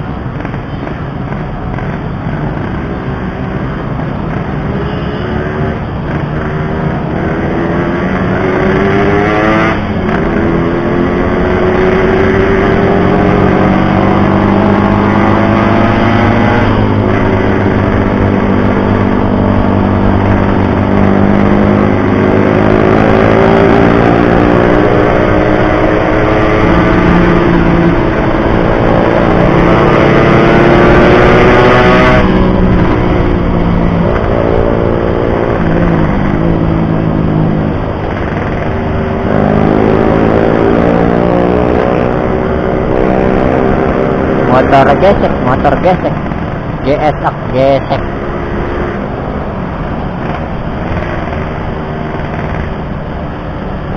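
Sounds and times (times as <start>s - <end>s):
motorcycle engine revving: 0.2s - 53.9s.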